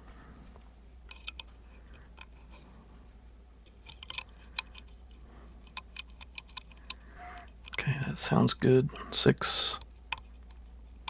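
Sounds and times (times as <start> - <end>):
faint low hum: 0.0 - 11.0
lock pick clicking in lock: 3.8 - 4.8.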